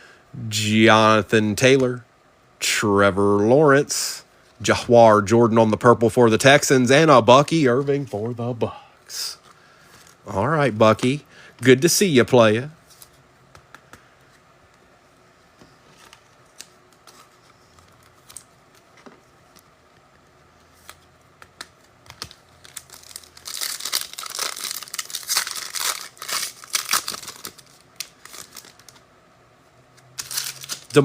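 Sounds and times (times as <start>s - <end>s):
wrapper crinkling as torn open: 22.1s - 29.0s, 30.1s - 31.0s.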